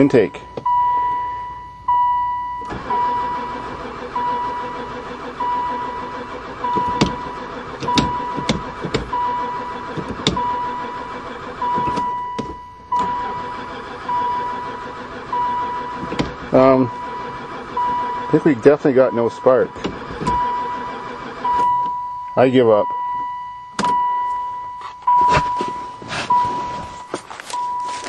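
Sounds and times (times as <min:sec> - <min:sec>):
starter cranking engine: 0:02.6 - 0:12.2, 0:12.9 - 0:22.0
warning chime beeping: 0:10.4 - 0:28.0.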